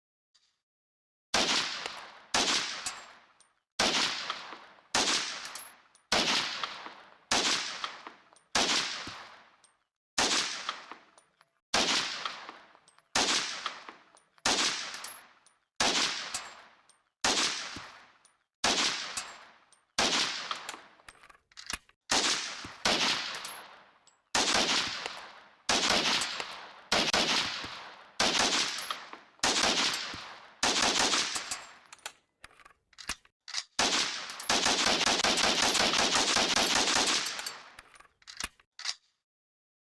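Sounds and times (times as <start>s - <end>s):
rifle shots with ringing echo: 1.4s - 9.6s, 10.2s - 11.1s, 11.8s - 18.0s, 18.6s - 21.0s, 22.1s - 31.9s, 33.8s - 37.8s.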